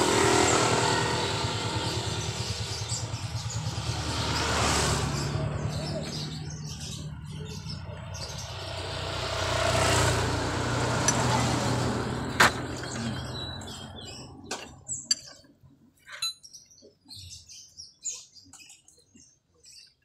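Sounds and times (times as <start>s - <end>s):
engine droning: 0.0s - 15.1s.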